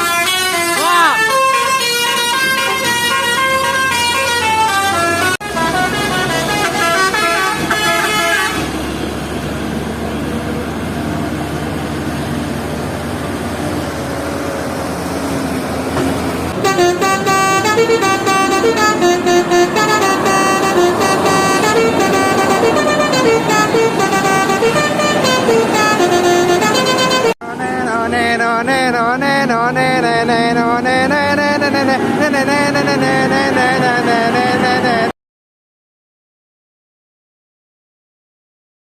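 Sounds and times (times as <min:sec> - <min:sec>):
bus musical horns: 0:00.0 - 0:09.4, 0:14.7 - 0:27.9, 0:30.4 - 0:35.1
heavy vehicle engine: 0:00.0 - 0:35.1
road noise: 0:00.0 - 0:35.2.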